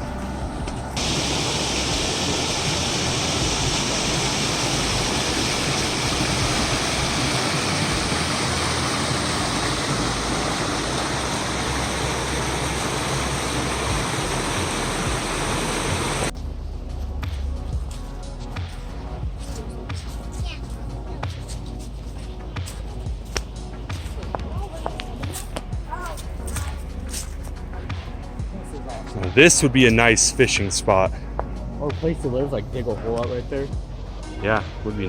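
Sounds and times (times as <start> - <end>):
waterfall rushing: 1.0 - 16.3.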